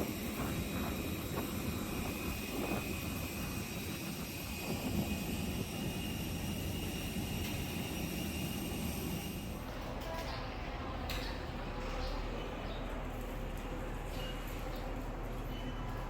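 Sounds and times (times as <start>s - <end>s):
jet airliner whining on ground: 0.0s - 9.6s.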